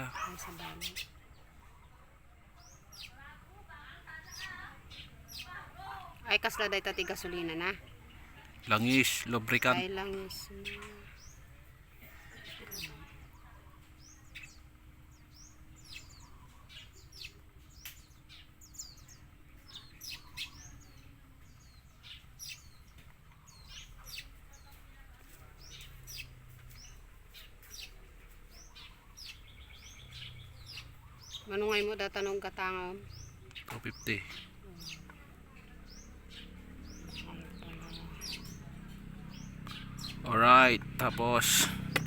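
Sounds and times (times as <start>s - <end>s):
small birds chirping: 0.0s - 42.0s.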